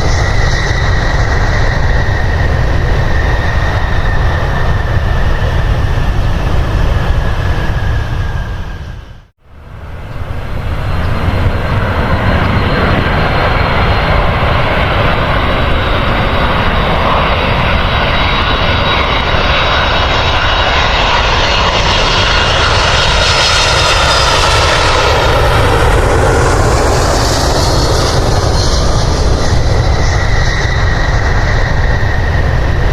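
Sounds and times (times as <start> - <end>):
airliner engines running: 0.0 - 32.9.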